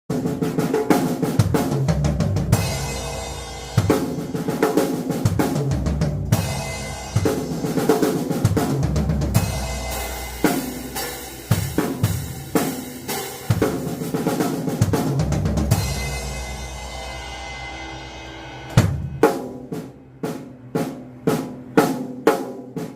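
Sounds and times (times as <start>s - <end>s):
bass drum: 1.2s - 19.9s
cymbal crashes: 2.6s - 4.5s, 6.3s - 8.4s, 15.7s - 20.6s
snare drum rolls: 18.7s - 22.9s.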